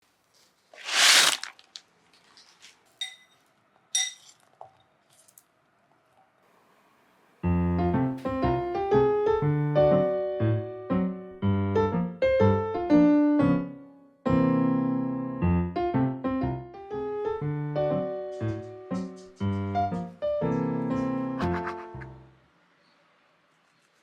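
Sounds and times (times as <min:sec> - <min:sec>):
rustling noise: 0:00.0 - 0:03.0
kitchen utensils clinking: 0:03.0 - 0:05.4
piano background music: 0:07.4 - 0:22.3.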